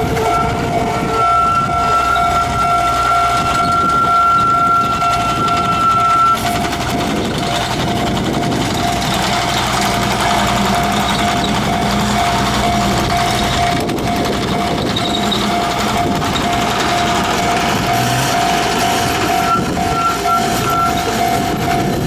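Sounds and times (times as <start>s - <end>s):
higher held tone: 0.0s - 7.1s
level-crossing alarm ringing: 0.0s - 22.0s.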